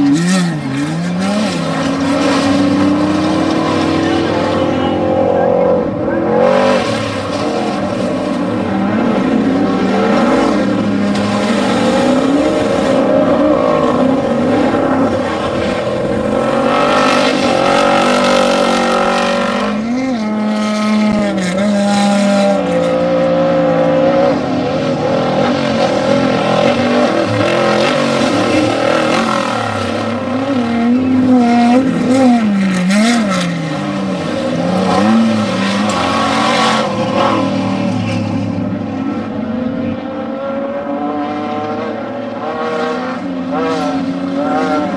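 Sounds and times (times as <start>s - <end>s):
race vehicle engines revving: 0.0s - 44.9s.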